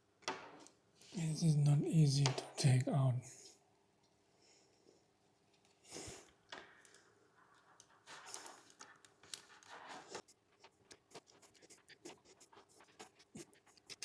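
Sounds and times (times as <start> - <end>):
scratching and clicking of handling: 5.5 - 14.0.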